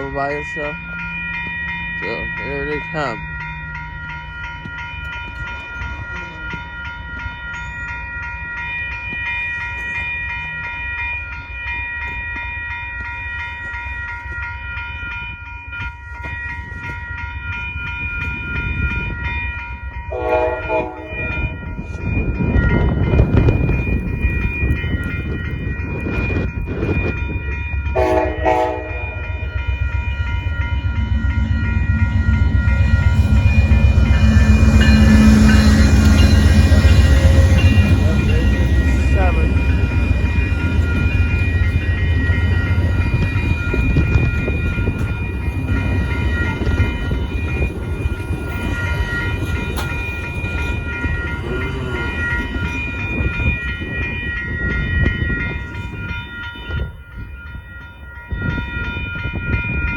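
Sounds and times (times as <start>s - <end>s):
crossing warning bell ringing: 0.0s - 59.9s
train rumble: 0.0s - 59.9s
train horn blasts: 20.1s - 21.3s, 27.9s - 29.5s.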